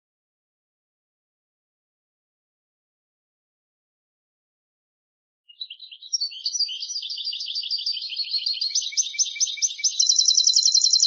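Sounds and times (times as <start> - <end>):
goldfinch twittering: 5.6 - 11.0.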